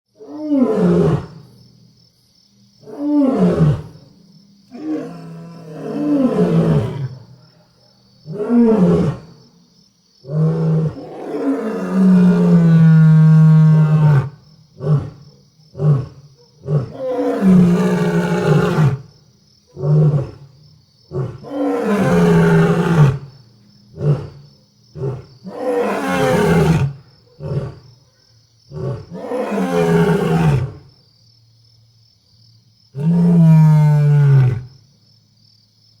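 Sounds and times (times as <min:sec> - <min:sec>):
lions roaring: 0:10.3 - 0:15.2, 0:15.8 - 0:19.0, 0:21.1 - 0:23.3, 0:25.0 - 0:27.8, 0:28.8 - 0:30.8, 0:33.0 - 0:34.7.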